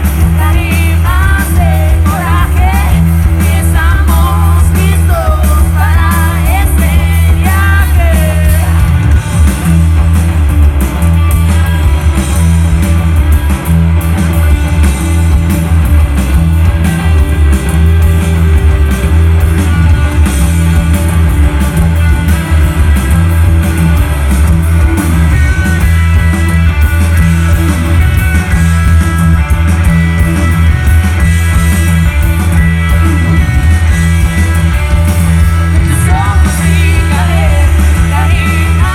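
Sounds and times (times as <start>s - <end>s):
rock band playing live: 0.0s - 38.9s
person singing: 0.2s - 9.0s, 35.8s - 38.9s.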